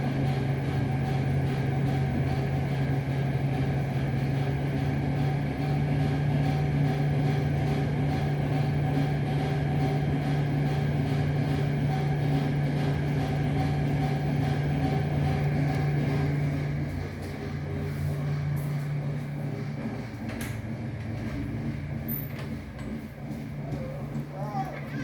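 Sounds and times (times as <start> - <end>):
motor humming: 0.0 - 25.0.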